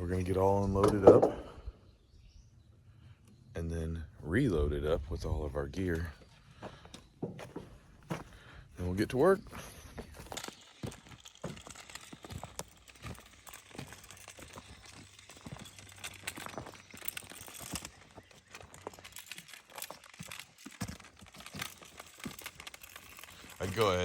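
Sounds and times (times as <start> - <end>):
scrap metal crunches and clicks: 9.2 - 24.0.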